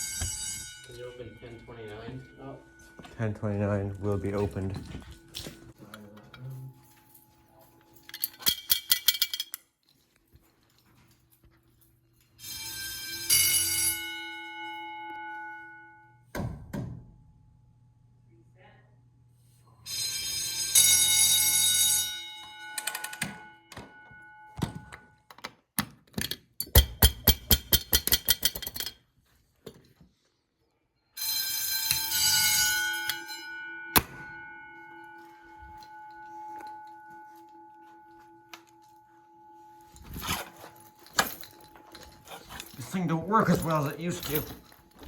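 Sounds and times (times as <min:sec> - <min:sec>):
fire alarm bell ringing: 0:00.0 - 0:09.5, 0:12.2 - 0:16.3, 0:19.6 - 0:25.3, 0:31.1 - 0:45.0.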